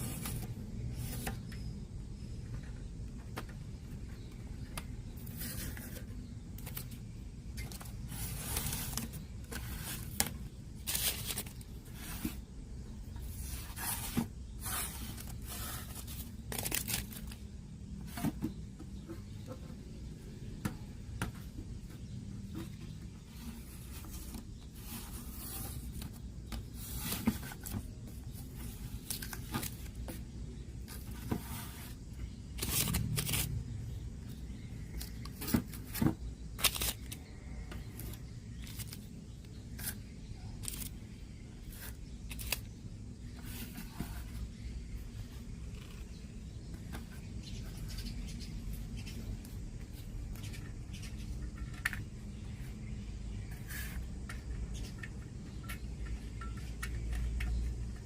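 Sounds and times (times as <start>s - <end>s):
rustling scrape: 7.8s - 12.5s, 13.2s - 17.4s, 23.2s - 30.0s, 30.9s - 33.6s, 53.5s - 54.1s.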